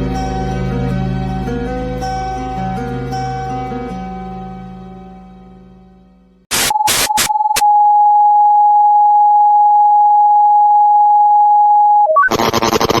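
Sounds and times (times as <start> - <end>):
loud static hiss: 6.5 - 7.3
static bursts: 6.5 - 7.6
quick stepped beeps: 6.5 - 7.7.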